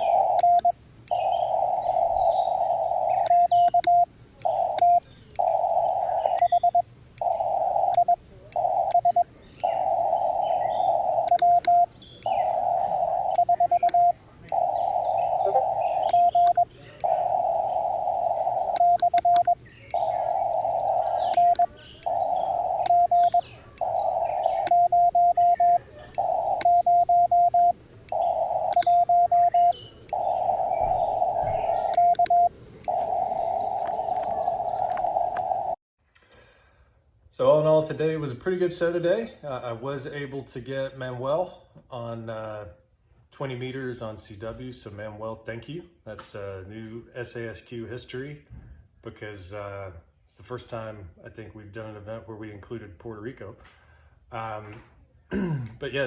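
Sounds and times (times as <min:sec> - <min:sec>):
birds chirping faintly: 0:00.0 - 0:35.8
fast morse code beeps: 0:00.0 - 0:35.8
radio band hiss: 0:00.0 - 0:35.8.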